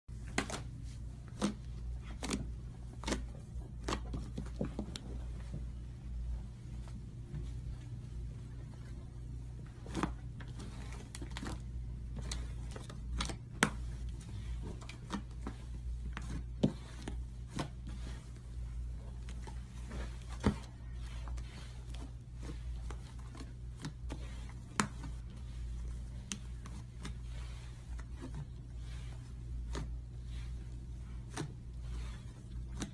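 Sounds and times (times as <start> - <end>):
steady low hum: 0.1 - 32.9.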